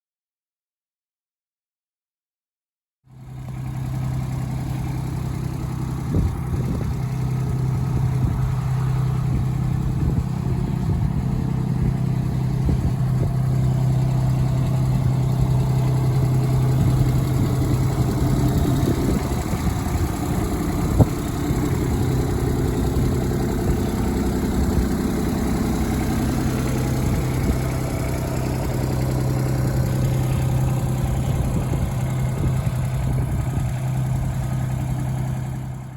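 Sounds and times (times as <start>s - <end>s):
diesel engine running: 3.1s - 35.9s.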